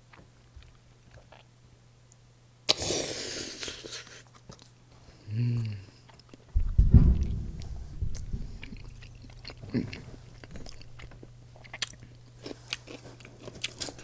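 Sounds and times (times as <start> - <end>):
loud wet chewing: 9.4 - 14.0
crisp bite and chewing: 10.7 - 14.0.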